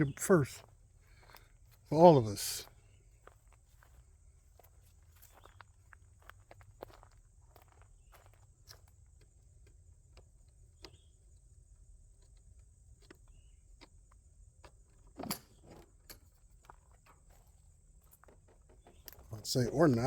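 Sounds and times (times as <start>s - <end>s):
faint footsteps: 0.5s - 9.0s.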